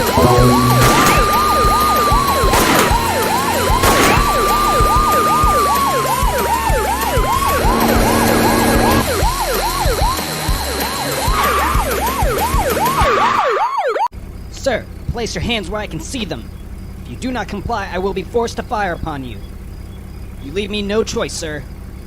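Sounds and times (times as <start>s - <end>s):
police siren yelp: 12.8s - 14.1s
police siren wail: 12.9s - 14.1s.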